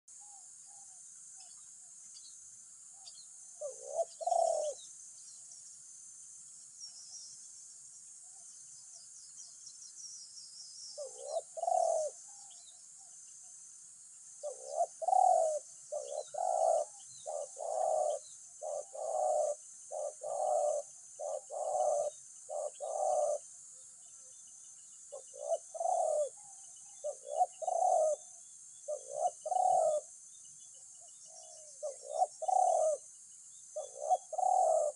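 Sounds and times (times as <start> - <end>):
small birds chirping: 0.1 - 34.9
doves cooing: 3.6 - 4.8, 11.0 - 12.6, 14.4 - 23.5, 25.1 - 30.1, 31.3 - 33.1, 33.8 - 34.9.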